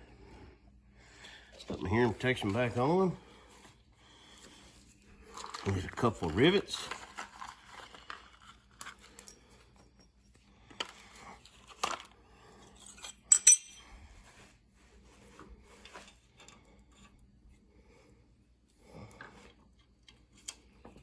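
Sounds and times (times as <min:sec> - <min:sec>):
steel parts clinking and tapping: 0:09.1 - 0:10.2, 0:12.8 - 0:13.9.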